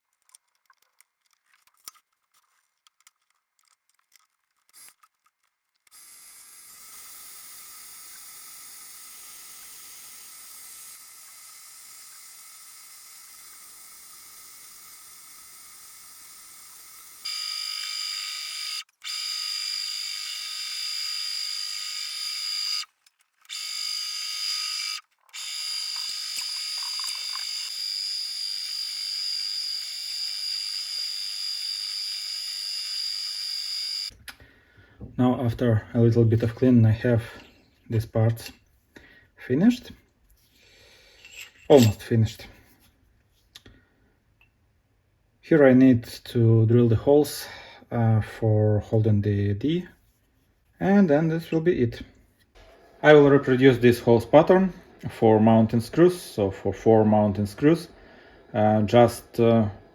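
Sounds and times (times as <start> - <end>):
lathe motor whine: 23.5 - 34.1.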